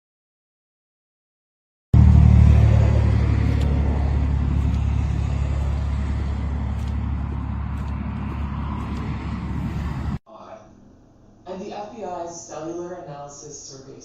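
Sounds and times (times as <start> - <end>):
engine low rumble: 2.0 - 10.2.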